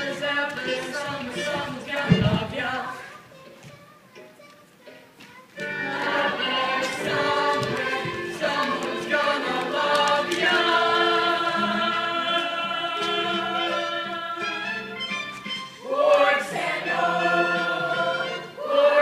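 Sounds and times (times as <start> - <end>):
chorus singing in harmony: 0.0 - 3.1, 5.7 - 19.0.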